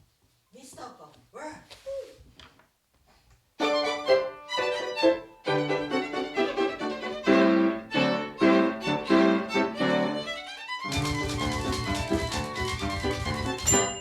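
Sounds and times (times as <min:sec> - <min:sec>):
violin playing brisk melody: 0:03.6 - 0:14.0.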